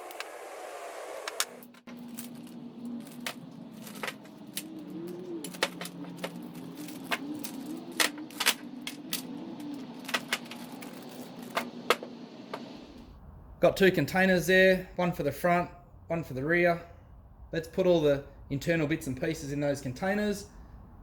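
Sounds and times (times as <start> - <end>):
steady low hum: 1.8 - 21.0
metal parts clinking: 1.9 - 11.7.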